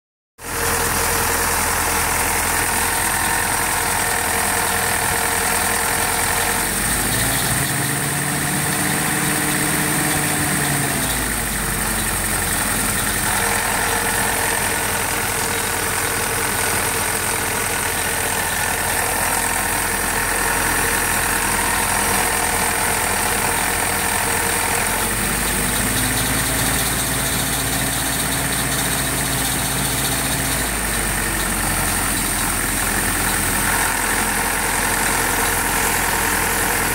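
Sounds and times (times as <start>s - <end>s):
jeep engine idling and revving: 0.4s - 36.9s.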